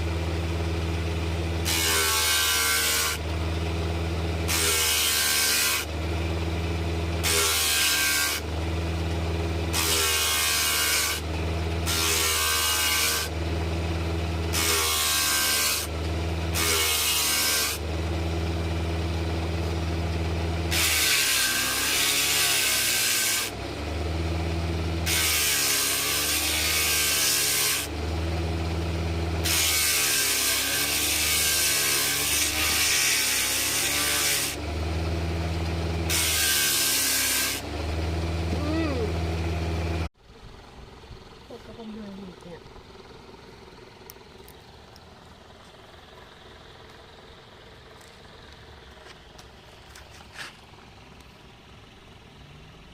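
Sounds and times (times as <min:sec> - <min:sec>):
electric sander motor hum: 0:00.0 - 0:40.1
abrasive grinding against wood: 0:48.9 - 0:50.7.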